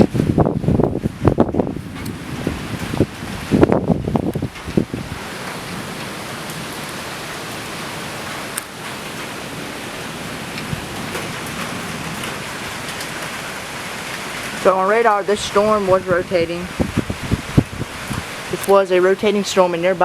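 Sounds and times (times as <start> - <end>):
wind buffeting microphone: 0.0 - 19.4
heavy rain hissing: 0.0 - 20.0
faint raindrop ticks: 5.4 - 9.3, 10.5 - 14.6, 17.6 - 18.8.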